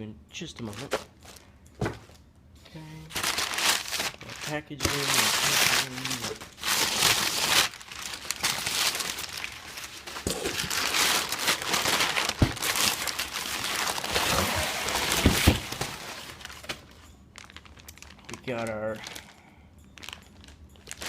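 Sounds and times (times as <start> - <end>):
packing material rustling: 3.1 - 19.4, 20.0 - 21.0.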